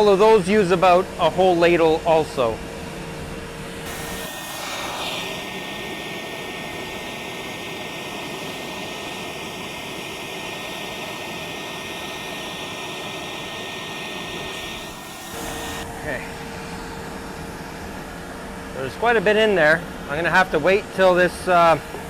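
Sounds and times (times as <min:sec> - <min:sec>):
furnace burner rushing: 0:03.7 - 0:17.1
thin high whine: 0:03.8 - 0:16.6.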